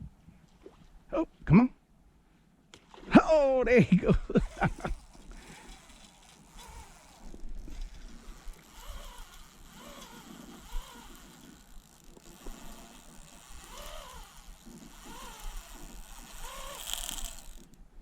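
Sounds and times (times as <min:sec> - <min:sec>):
fishing reel drag buzzing: 0:04.3 - 0:17.8.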